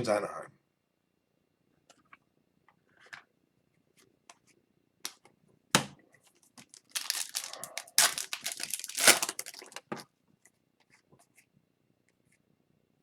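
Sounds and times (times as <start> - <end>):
foil wrapper crinkling: 6.6 - 10.0
foil wrapper tearing: 6.6 - 10.0.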